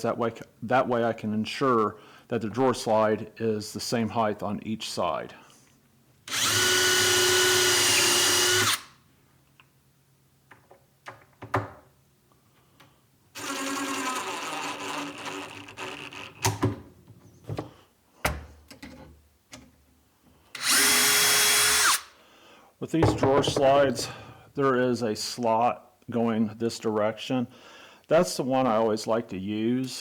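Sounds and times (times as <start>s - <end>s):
power drill driving screws: 6.3s - 9.0s, 13.4s - 16.2s, 20.6s - 22.1s.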